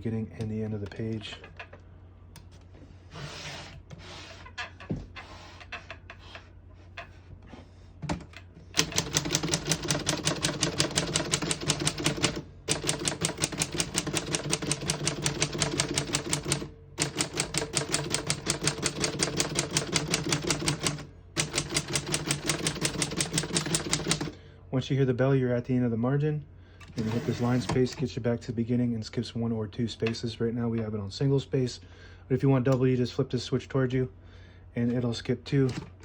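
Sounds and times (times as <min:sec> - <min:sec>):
typewriter keystrokes: 0:08.8 - 0:24.3.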